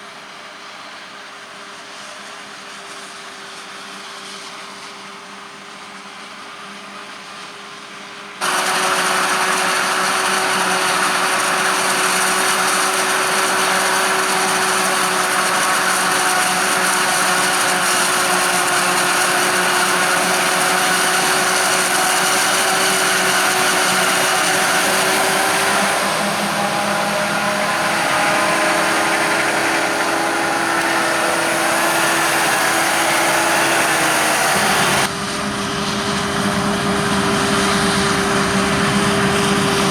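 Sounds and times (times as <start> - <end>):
machinery with high whine: 8.4 - 39.9.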